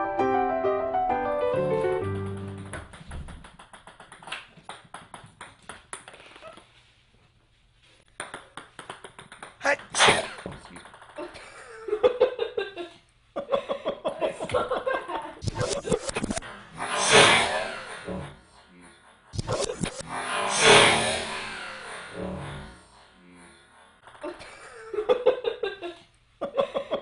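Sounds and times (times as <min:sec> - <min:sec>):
person sneezing loudly: 0:09.6 - 0:10.5.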